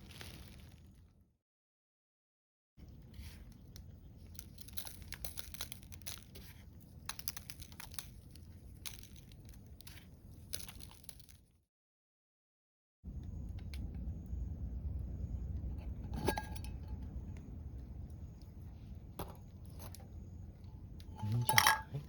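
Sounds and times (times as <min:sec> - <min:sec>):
crackling and crinkling: 0:00.0 - 0:01.2, 0:02.8 - 0:11.6.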